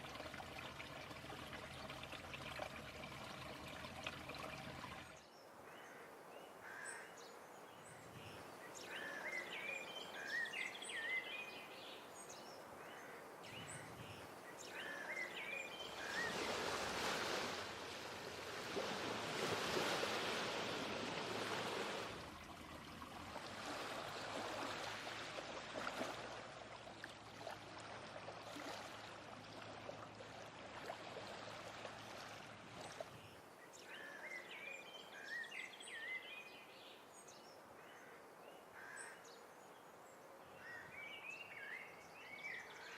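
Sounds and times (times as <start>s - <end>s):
waves washing against shore: 15.9s - 29.1s.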